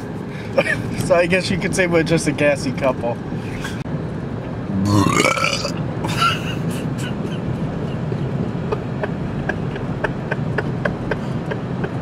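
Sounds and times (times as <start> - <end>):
road noise inside moving car: 0.0 - 12.0
vocal outburst with rising pitch: 4.7 - 5.8.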